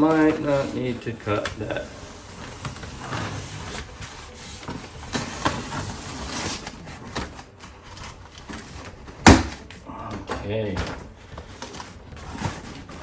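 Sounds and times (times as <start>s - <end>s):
cardboard rustling and scraping: 0.0s - 13.0s.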